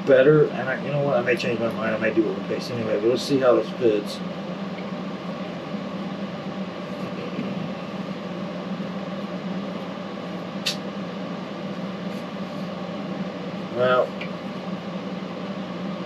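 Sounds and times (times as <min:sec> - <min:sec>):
air conditioner humming: 0:00.0 - 0:16.0
short click: 0:10.6 - 0:10.8.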